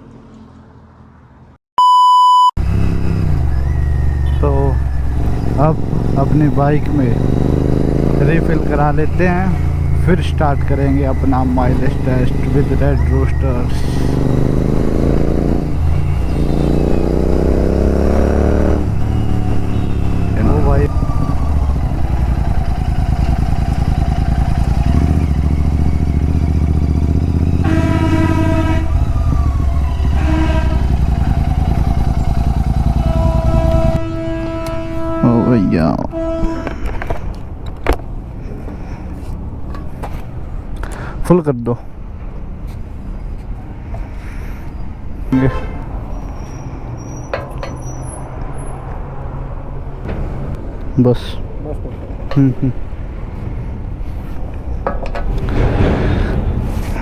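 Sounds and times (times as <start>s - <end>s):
road traffic hum: 0.0s - 1.6s, 2.6s - 57.0s
motorcycle engine pulsing: 2.6s - 35.5s
vehicle horn: 16.2s - 37.2s.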